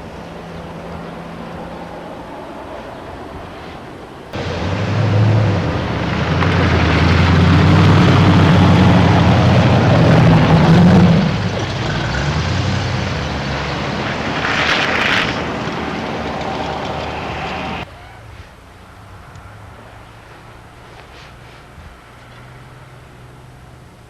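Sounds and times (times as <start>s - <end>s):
vehicle engine running: 0.0s - 24.0s.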